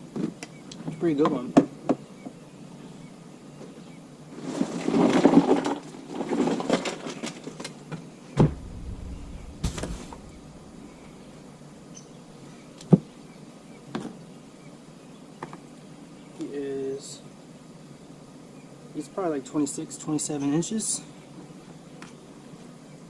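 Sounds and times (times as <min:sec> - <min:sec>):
rustling and scraping: 0:08.4 - 0:11.5
sharp knocks: 0:08.4 - 0:11.5.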